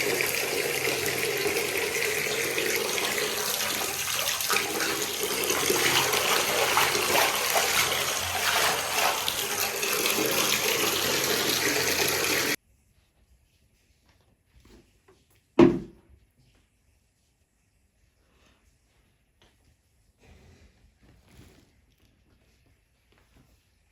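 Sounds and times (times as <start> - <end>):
water running from a tap: 0.0 - 12.6.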